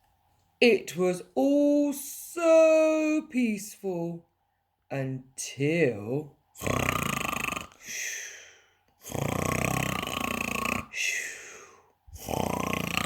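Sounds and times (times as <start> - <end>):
person imitating snoring: 6.6 - 13.0
breathy exhale: 7.7 - 9.2, 10.9 - 12.4.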